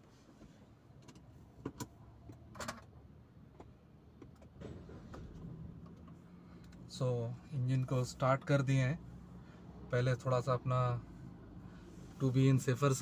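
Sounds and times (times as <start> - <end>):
car engine starting and idling: 4.2 - 13.0.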